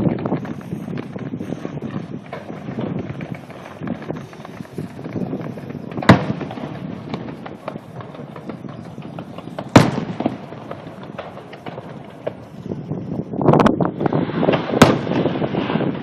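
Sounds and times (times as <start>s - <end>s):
fireworks booming: 0.0s - 16.0s
fireworks crackling pops: 0.0s - 16.0s.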